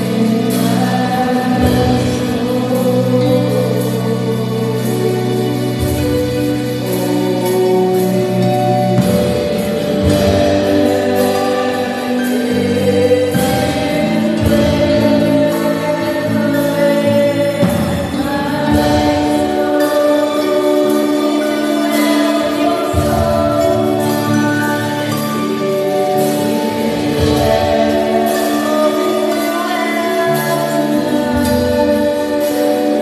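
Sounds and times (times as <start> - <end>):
gospel worship music: 0.0 - 33.0.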